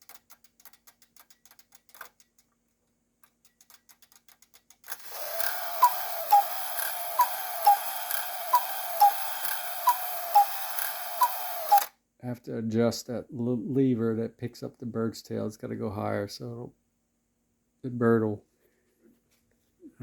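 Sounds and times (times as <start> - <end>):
clock ticking: 5.0 - 11.9
two-note cuckoo call: 5.7 - 11.9.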